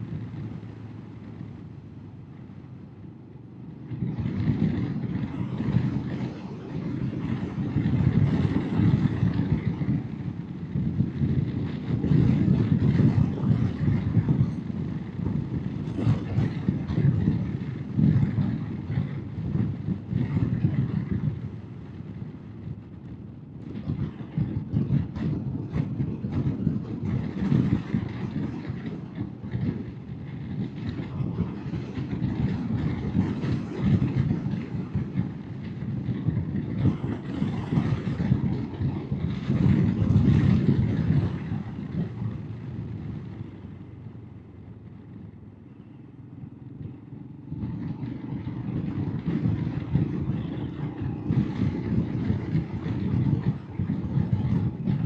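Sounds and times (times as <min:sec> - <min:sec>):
motorcycle engine running: 0:24.0 - 0:55.0.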